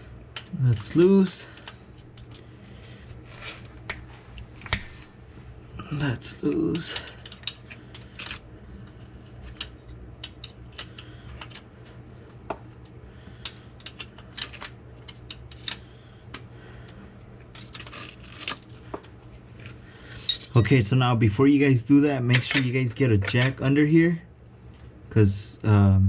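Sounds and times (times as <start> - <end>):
low steady hum: 0.0 - 26.0
hand tools clinking on metal: 20.2 - 20.8.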